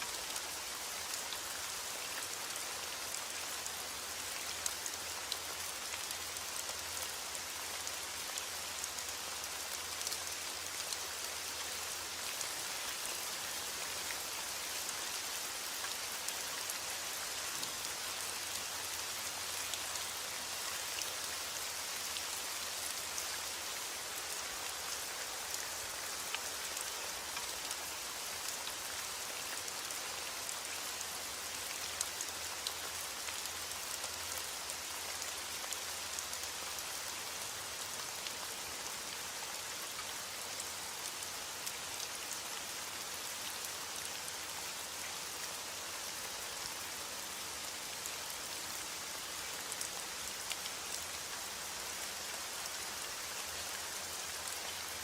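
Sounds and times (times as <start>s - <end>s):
steady rain hiss: 0.0s - 55.0s
rain drops ticking: 0.1s - 42.4s.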